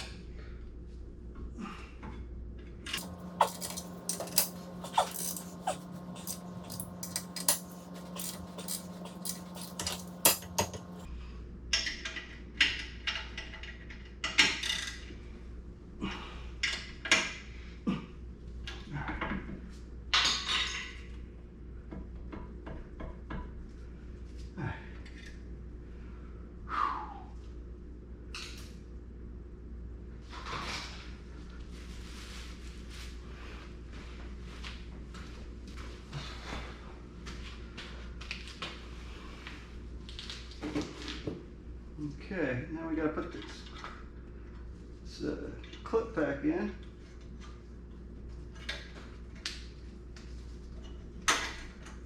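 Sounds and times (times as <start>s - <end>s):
metal tools clinking and knocking: 3.0s - 11.1s
steady hum: 3.0s - 11.1s.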